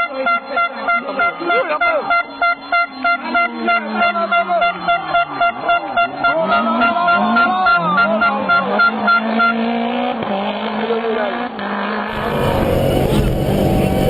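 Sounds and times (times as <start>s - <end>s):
horn short beeps: 0.0s - 9.9s
rally car engine revving: 0.0s - 14.0s.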